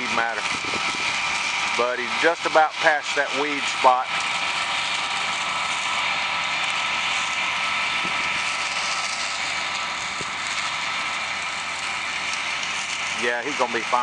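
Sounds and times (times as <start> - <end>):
combine harvester running: 0.0 - 14.0
machine whining tones: 0.0 - 14.0.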